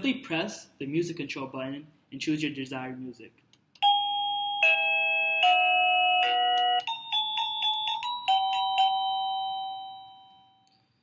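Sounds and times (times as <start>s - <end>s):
electronic doorbell chime tunes: 3.8s - 11.0s.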